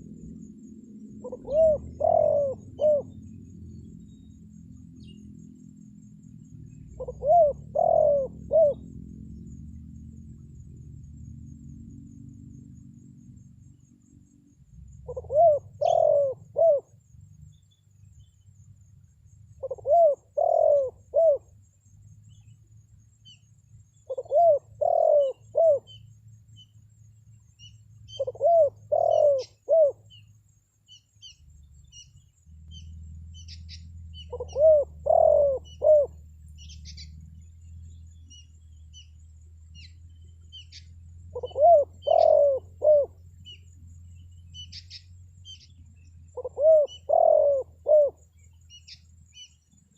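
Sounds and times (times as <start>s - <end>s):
low hum: 0.0s - 15.6s
small birds chirping: 0.0s - 49.9s
dove cooing: 1.0s - 3.5s, 6.7s - 9.3s, 15.0s - 16.9s, 19.6s - 21.6s, 24.0s - 26.1s, 28.1s - 30.3s, 33.4s - 37.2s, 40.5s - 43.6s, 46.3s - 49.5s.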